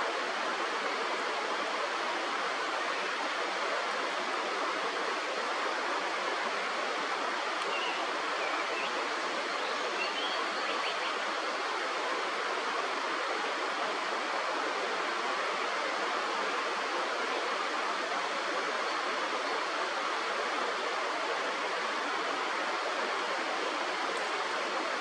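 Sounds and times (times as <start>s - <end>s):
flowing river water: 0.0s - 25.0s.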